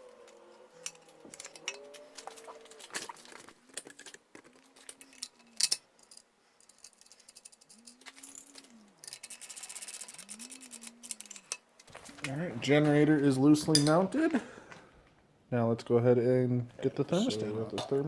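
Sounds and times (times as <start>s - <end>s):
bird cooing: 7.7s - 11.5s.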